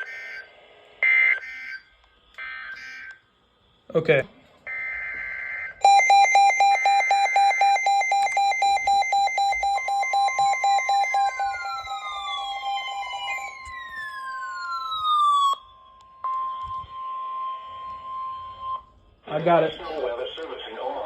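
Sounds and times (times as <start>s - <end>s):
steady warning alarm tone: 4.7s - 19.2s
rapid electronic alarm beeps: 5.8s - 19.0s
falling electronic sweeps: 5.9s - 18.8s.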